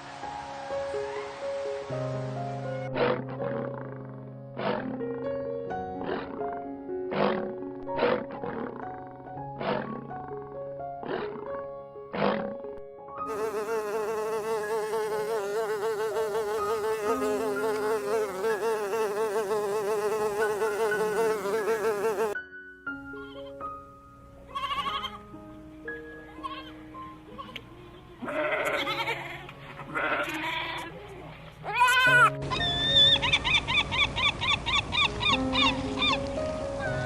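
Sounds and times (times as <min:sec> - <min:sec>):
music: 0:00.0 - 0:37.0
insect wings buzzing: 0:13.3 - 0:22.4.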